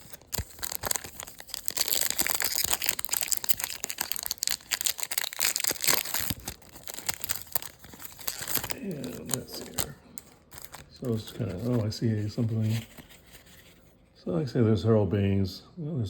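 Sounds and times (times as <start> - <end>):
wrapper crinkling and tearing: 0.0 - 13.5.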